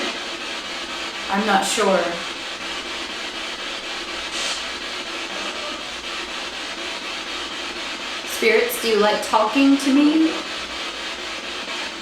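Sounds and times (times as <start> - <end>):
burst of loud hiss: 4.2 - 5.9.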